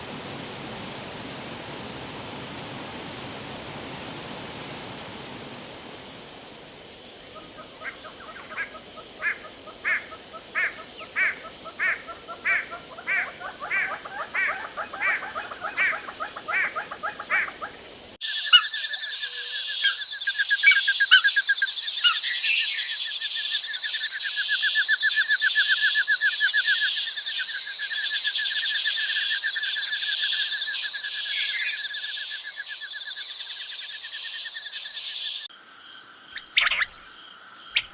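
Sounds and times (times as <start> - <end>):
small bird calling: 7.2 - 18.6, 36.4 - 37.9
bird fast trilling call: 36.5 - 37.0.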